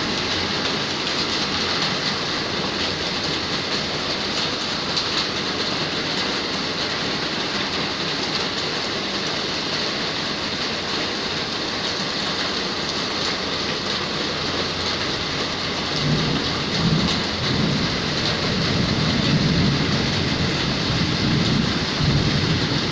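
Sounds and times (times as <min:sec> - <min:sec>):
heavy rain hissing: 0:00.0 - 0:22.9.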